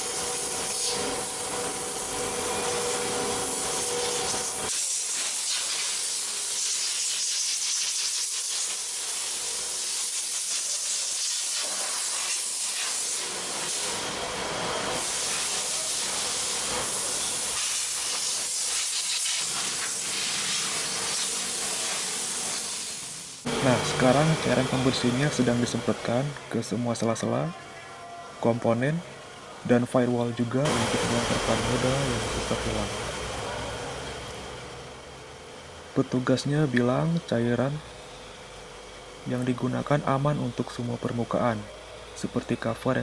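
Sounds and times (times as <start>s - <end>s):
machine hum: 0.0s - 5.0s, 13.0s - 43.0s
high-pressure spray hissing: 0.0s - 26.1s, 30.6s - 33.3s.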